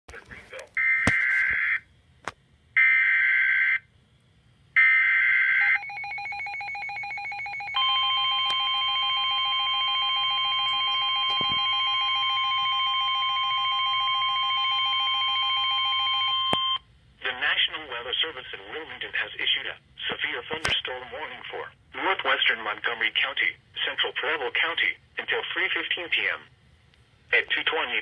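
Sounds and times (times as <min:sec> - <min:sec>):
steady warning alarm tone: 0:04.8 - 0:16.8.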